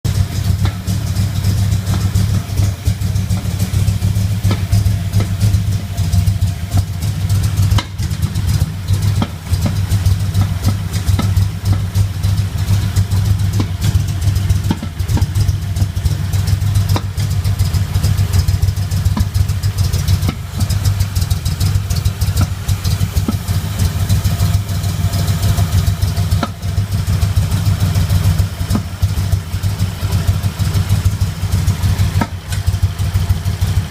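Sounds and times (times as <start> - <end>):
car engine idling: 0.0 - 33.9
engine intake popping: 0.1 - 33.9.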